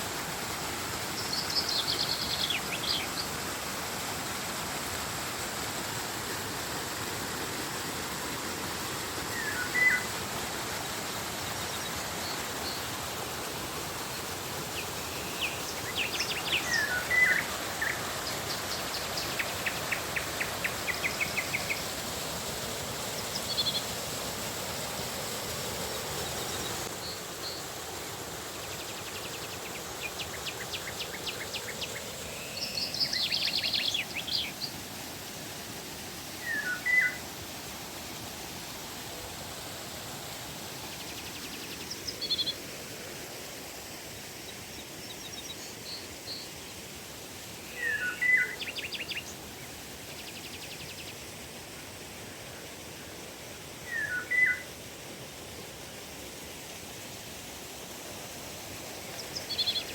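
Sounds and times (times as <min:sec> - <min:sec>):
river water flowing: 0:00.0 - 0:59.9
birds calling: 0:53.9 - 0:54.6.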